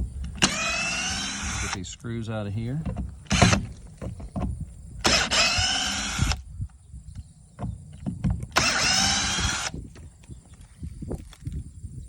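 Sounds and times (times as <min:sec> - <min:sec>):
cordless drill whining: 0:00.2 - 0:01.9, 0:03.2 - 0:03.8, 0:05.0 - 0:06.5, 0:07.8 - 0:10.6.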